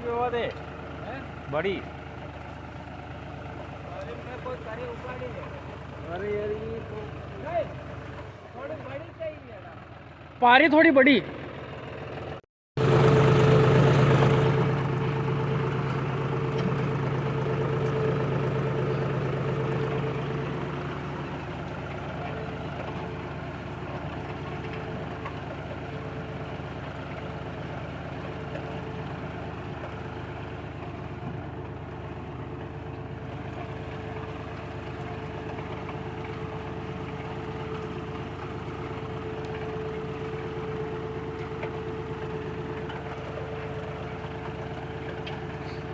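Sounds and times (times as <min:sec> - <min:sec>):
tractor engine running: 0:00.0 - 0:45.9.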